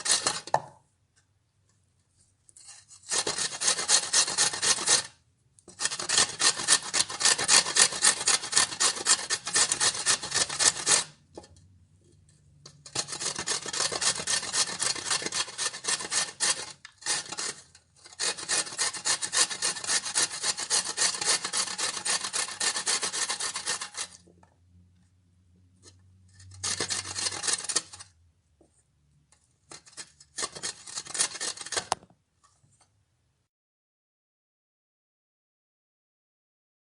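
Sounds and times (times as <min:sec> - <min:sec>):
vegetable rasping on a grater: 0:00.0 - 0:00.6, 0:02.6 - 0:11.2, 0:12.6 - 0:24.3, 0:26.3 - 0:28.1, 0:29.7 - 0:32.0.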